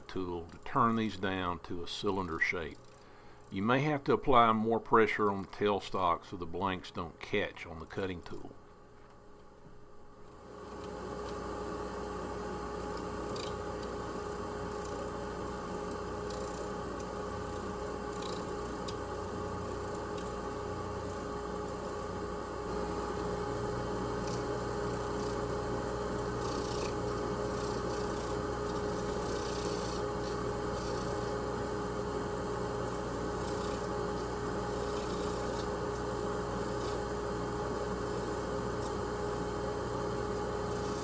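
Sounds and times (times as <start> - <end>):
lathe motor hum: 10.5 - 41.0
tool cutting spinning antler: 12.8 - 14.1, 14.7 - 15.1, 15.7 - 19.0, 26.2 - 31.3, 32.9 - 37.0.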